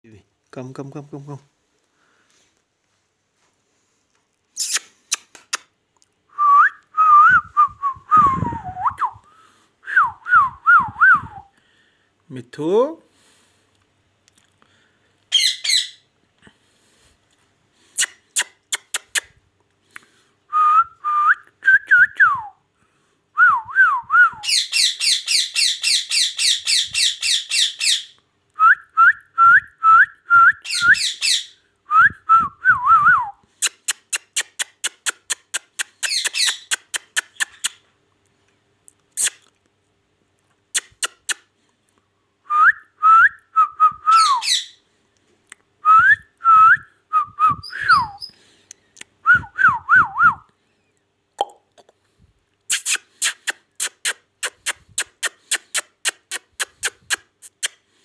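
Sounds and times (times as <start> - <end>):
parrot harsh repeated calls: 15.3 - 16.0, 30.7 - 31.6, 36.0 - 37.7, 44.1 - 44.8
quick clicks: 33.6 - 37.8, 52.7 - 57.8.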